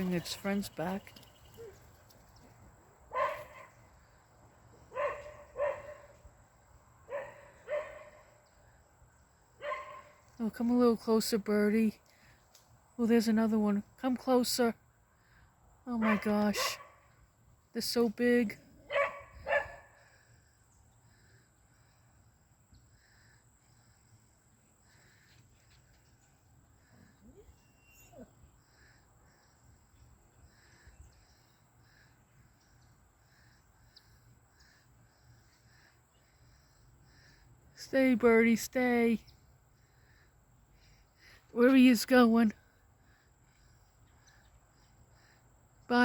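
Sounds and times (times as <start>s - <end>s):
dog barking: 3.1s - 3.7s, 4.9s - 6.1s, 7.1s - 8.2s, 9.6s - 10.1s, 16.0s - 17.0s, 18.9s - 19.9s.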